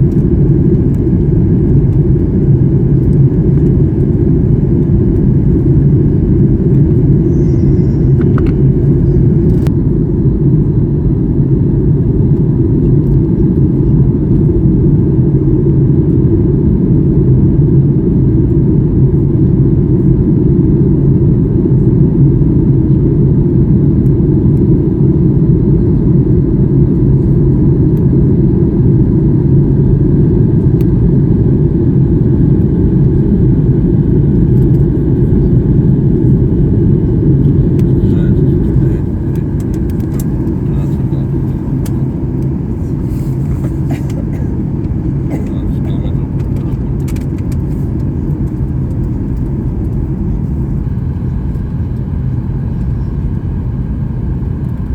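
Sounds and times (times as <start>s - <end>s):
airplane cabin engine rumble: 0.0s - 54.9s.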